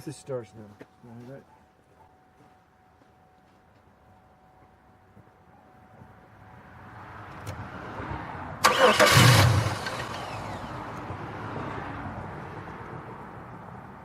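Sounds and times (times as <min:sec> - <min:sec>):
loud engine burst: 0:08.6 - 0:10.7
car engine cranking on starter: 0:08.6 - 0:10.8.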